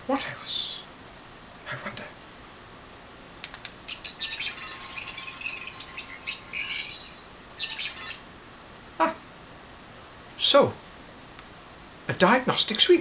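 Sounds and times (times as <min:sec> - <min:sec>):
electronic warbling sound effect: 0:03.9 - 0:08.3.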